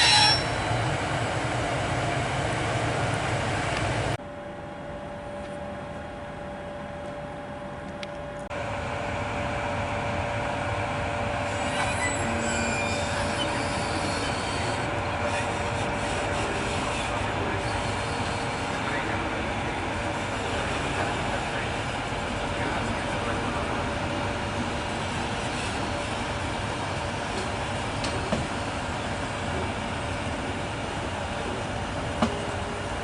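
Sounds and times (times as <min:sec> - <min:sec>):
faint wheel squeals on rails: 0:00.0 - 0:00.9, 0:11.4 - 0:19.1
electric locomotive hum: 0:00.0 - 0:33.0
train wheels rumbling: 0:08.2 - 0:33.0.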